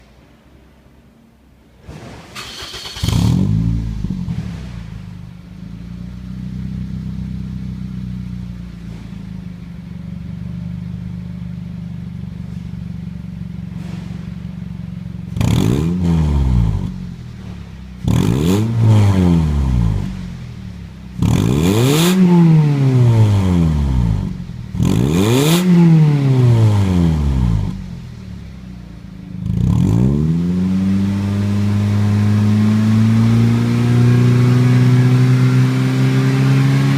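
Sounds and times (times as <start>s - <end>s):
car engine idling and revving: 0.0s - 36.9s.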